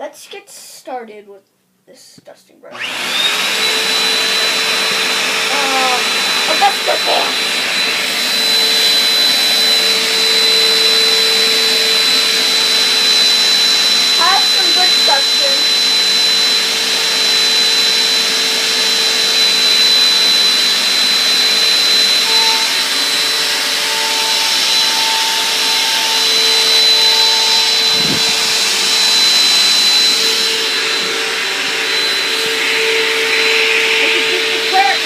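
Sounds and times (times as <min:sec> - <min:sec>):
vacuum cleaner running: 0:02.7 - 0:35.0.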